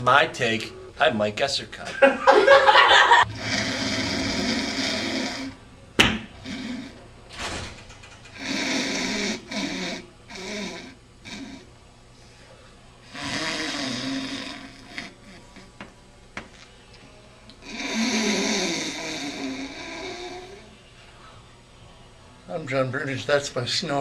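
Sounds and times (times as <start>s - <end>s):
person mock snoring: 3.2s - 5.6s, 6.4s - 7.0s, 8.3s - 11.7s, 13.1s - 15.7s, 17.6s - 20.8s.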